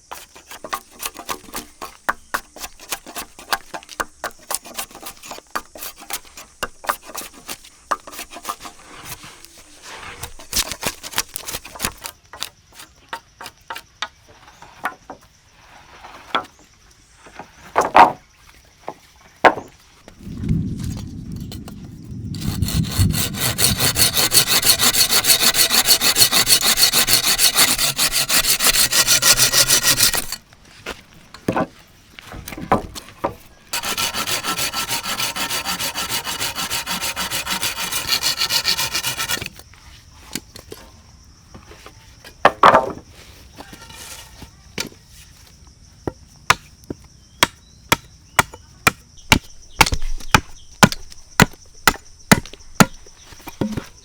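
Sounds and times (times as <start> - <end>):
hand saw cutting wood: 0.0 - 12.5, 22.4 - 30.4, 33.7 - 39.6
sharp wooden knocks: 47.4 - 54.0.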